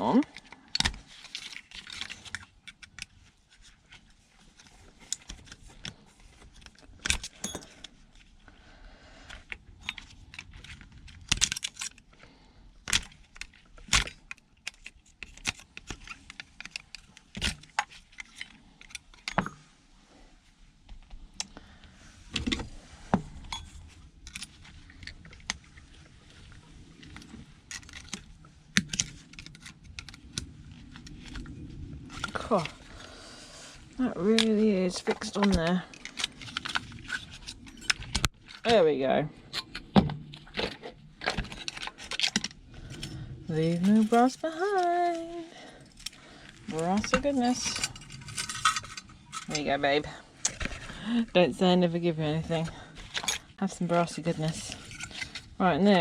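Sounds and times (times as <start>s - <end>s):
small metal and plastic parts clicking: 0.3s - 4.0s, 9.3s - 12.2s, 12.8s - 19.6s.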